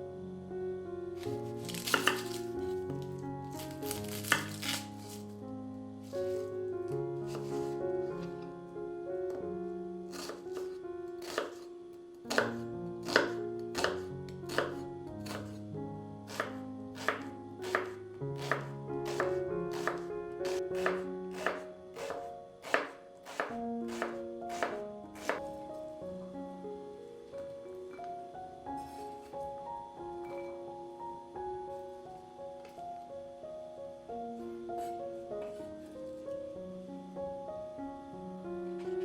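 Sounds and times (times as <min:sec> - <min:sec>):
soft melodic background music: 0:00.0 - 0:39.0
knife chopping on cutting board: 0:01.7 - 0:02.4, 0:03.9 - 0:04.9, 0:10.1 - 0:11.6, 0:12.3 - 0:15.6, 0:16.3 - 0:25.4.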